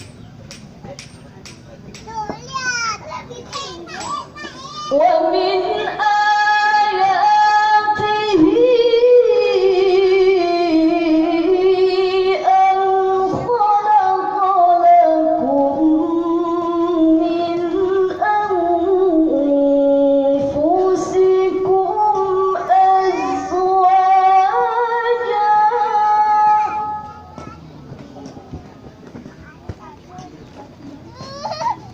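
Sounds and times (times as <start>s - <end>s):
woman chanting melodically: 4.9s - 27.4s.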